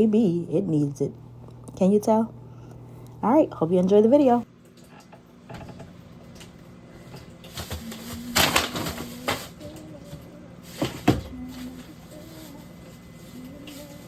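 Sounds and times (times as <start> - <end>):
items clattering in a refrigerator: 4.7 - 14.0.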